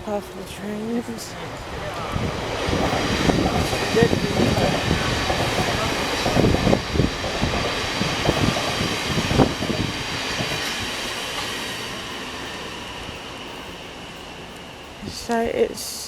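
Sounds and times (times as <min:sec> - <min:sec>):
train rumbling past on rails: 0:00.0 - 0:16.0
train wheel knocks: 0:01.6 - 0:11.6.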